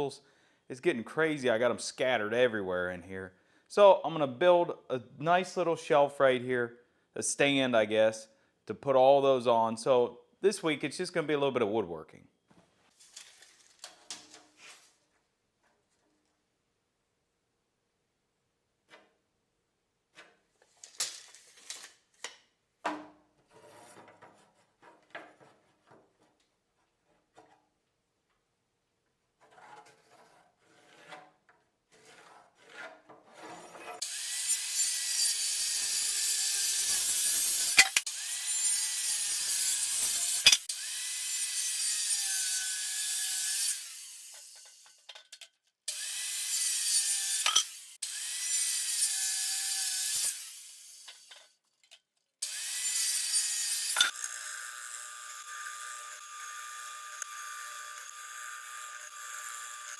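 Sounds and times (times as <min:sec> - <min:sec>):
power saw cutting wood: 0:33.4 - 0:45.0, 0:45.9 - 0:51.3, 0:52.4 - 0:59.9.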